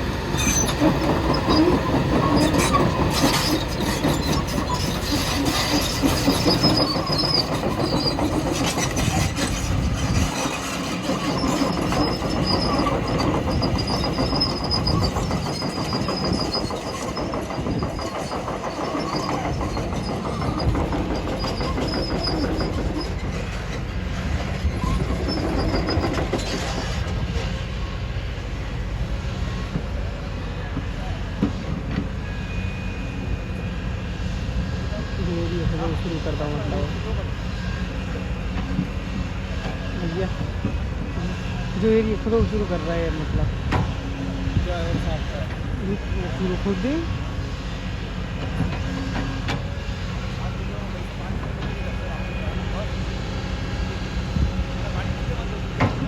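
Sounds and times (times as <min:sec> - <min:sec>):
excavator diesel engine: 0:00.0 - 0:56.0
thin high squeal: 0:00.3 - 0:17.3.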